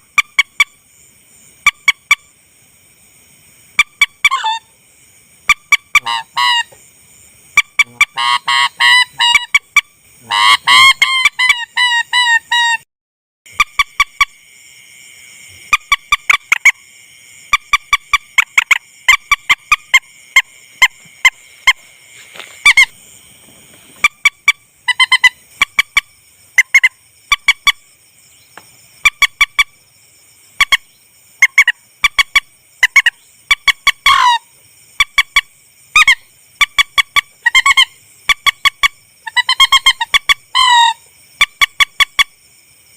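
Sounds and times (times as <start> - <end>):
rail bird calls: 3.8 - 4.7, 5.5 - 6.8, 7.6 - 12.8, 22.6 - 23.0, 30.6 - 42.2.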